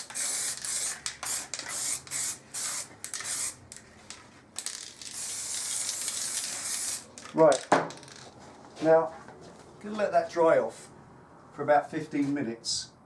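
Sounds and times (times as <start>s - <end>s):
spray paint can hissing: 0.0s - 3.8s, 5.0s - 7.3s.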